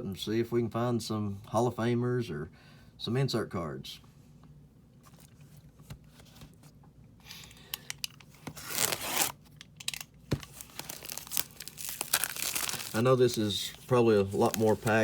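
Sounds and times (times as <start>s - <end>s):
packaging clicks and scrapes: 7.4s - 15.0s
packaging tearing: 8.5s - 15.0s.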